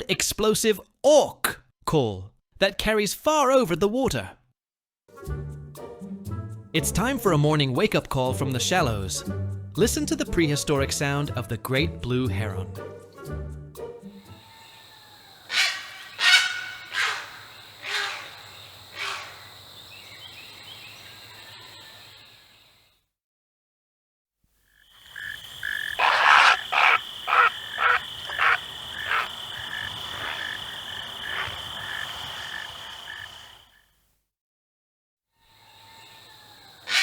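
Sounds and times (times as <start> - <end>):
heron croaking: 14.3 - 20.3, 25.0 - 33.8.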